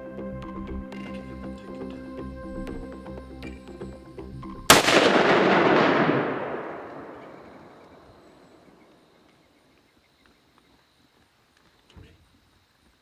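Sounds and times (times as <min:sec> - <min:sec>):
gunshot: 0:04.7 - 0:08.4.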